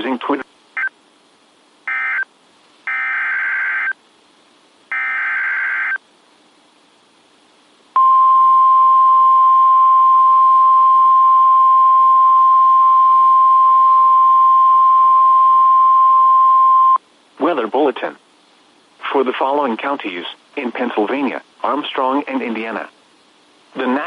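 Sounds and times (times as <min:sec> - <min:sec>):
loud steady alarm tone: 0:01.9 - 0:02.3, 0:02.9 - 0:04.0, 0:04.9 - 0:06.0.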